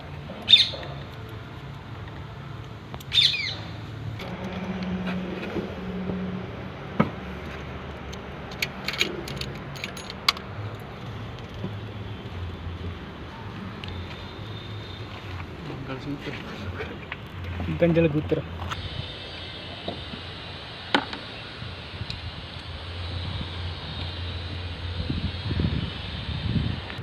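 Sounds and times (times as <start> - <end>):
metallic tool clicks and clinks: 8.1 - 10.5.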